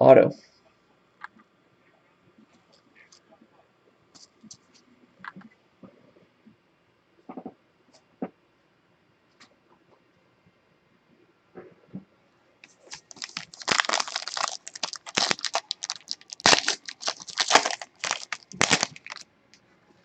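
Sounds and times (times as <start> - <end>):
plastic wrapping crinkling and tearing: 12.9 - 19.2.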